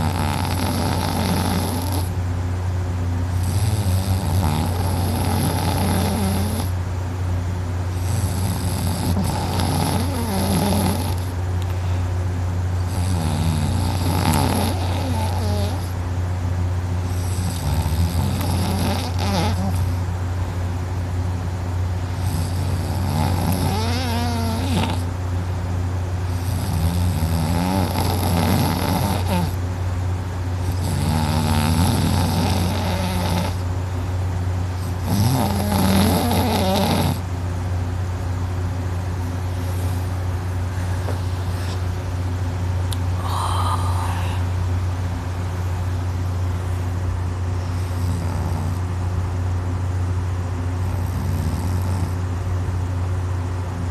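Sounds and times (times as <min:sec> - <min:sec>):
person snoring heavily: 0:00.0 - 0:02.2, 0:03.3 - 0:06.8, 0:07.9 - 0:11.3, 0:12.8 - 0:16.0, 0:17.1 - 0:20.0, 0:22.1 - 0:25.1, 0:26.3 - 0:29.6, 0:30.6 - 0:33.6, 0:34.8 - 0:37.2, 0:43.1 - 0:44.7, 0:47.6 - 0:48.9, 0:50.8 - 0:52.2
steady low hum: 0:00.0 - 0:53.9.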